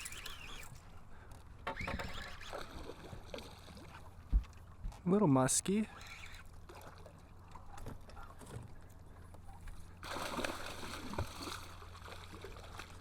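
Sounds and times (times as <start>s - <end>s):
fish splashing at water surface: 10.0s - 13.0s.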